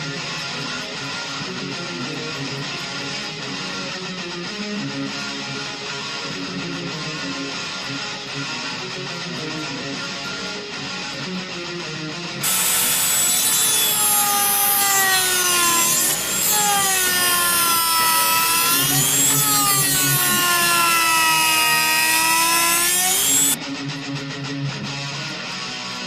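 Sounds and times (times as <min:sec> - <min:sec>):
rotary tool grinding plastic: 0:12.4 - 0:23.6.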